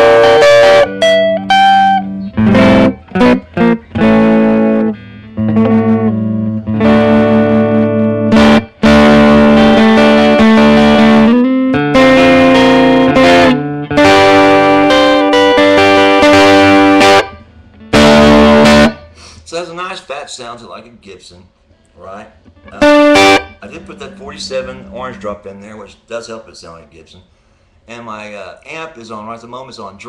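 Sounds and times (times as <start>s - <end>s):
electric guitar chords strummed: 0.0s - 19.2s, 22.4s - 25.4s.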